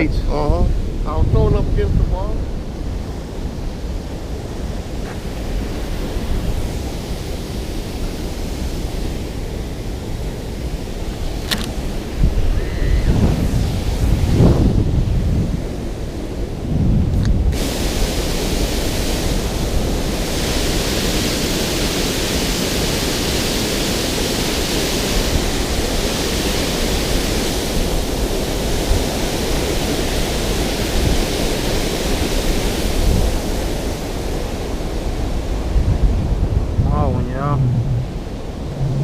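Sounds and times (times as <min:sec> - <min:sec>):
water rushing off spillway: 0:00.0 - 0:16.6, 0:17.4 - 0:35.8
wind buffeting microphone: 0:00.0 - 0:39.0.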